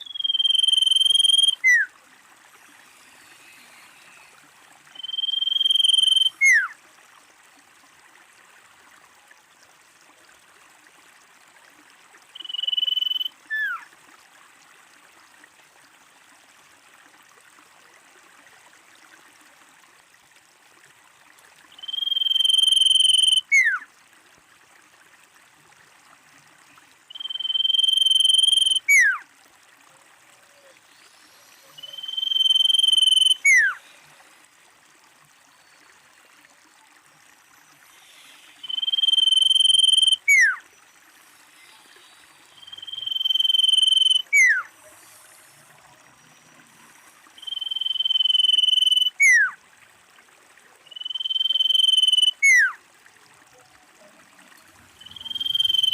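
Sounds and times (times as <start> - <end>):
bird whistling: 0.0 - 1.9, 4.9 - 6.7, 12.4 - 13.8, 21.8 - 23.8, 27.1 - 29.2, 31.7 - 33.8, 38.4 - 40.6, 42.6 - 44.7, 47.4 - 49.5, 50.9 - 52.8, 55.0 - 55.9
faint hiss: 0.0 - 23.4, 29.9 - 55.9.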